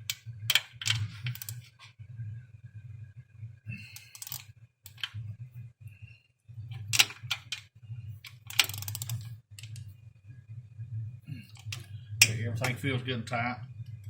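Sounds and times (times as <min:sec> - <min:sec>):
steady low hum: 0:00.0 - 0:14.0
wrench clinking on bolts: 0:04.0 - 0:05.0.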